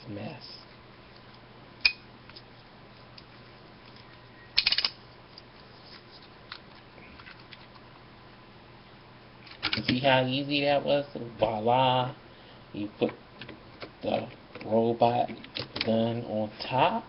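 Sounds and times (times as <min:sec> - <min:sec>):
plastic toy parts clicking: 0:04.6 - 0:05.0.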